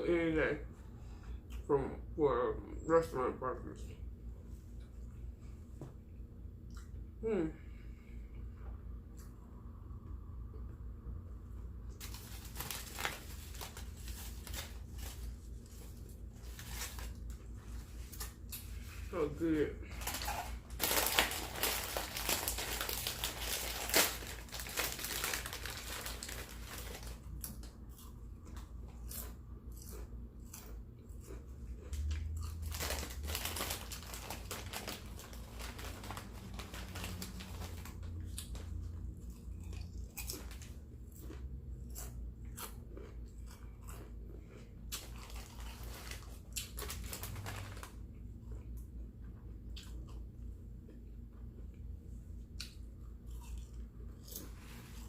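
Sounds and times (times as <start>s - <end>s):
person chewing crunchy food: 11.9s - 55.0s.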